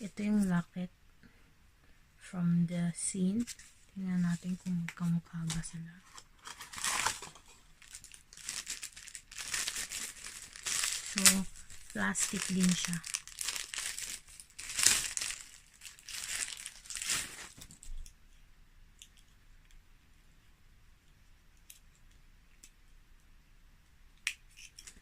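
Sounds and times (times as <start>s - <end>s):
plastic packaging crinkling: 3.4s - 18.0s.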